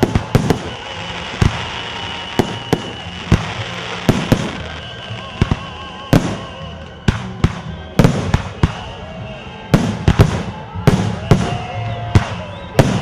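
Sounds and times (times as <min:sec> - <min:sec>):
fireworks bangs: 0:00.0 - 0:13.0.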